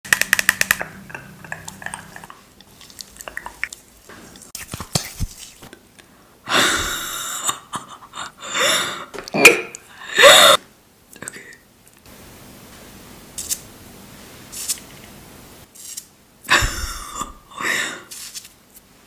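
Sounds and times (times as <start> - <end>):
hissing rustling sound: 2.1 - 5.7, 12.7 - 16.1, 18.1 - 19.0.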